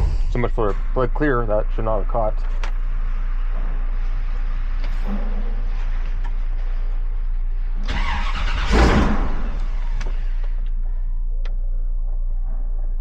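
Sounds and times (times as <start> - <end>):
car engine running: 0.0 - 13.0.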